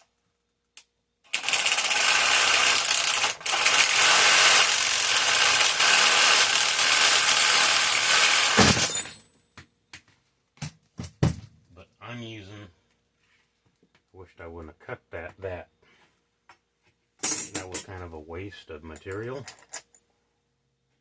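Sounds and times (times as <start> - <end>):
power tool cutting aluminum: 1.3 - 9.2.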